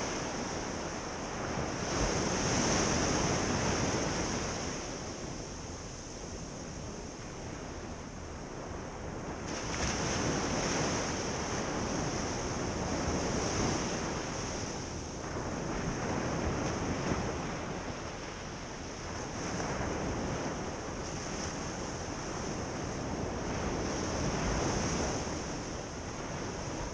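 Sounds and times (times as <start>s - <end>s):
ocean surf on beach: 0.0s - 26.9s.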